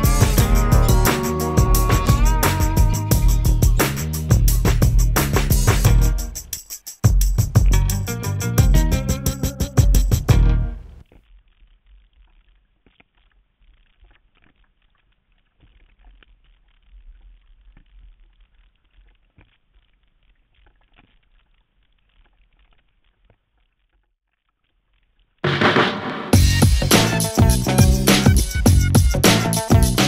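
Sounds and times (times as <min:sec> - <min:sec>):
low rumble: 0:00.0 - 0:06.3
loud music: 0:00.0 - 0:06.6, 0:25.4 - 0:30.0.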